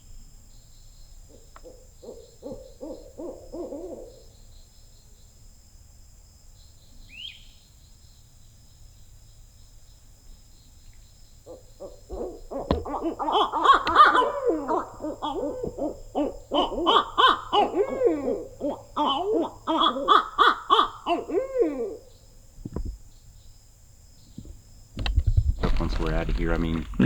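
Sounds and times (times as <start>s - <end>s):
owls hooting and cackling: 1.3s - 4.4s, 11.4s - 22.3s.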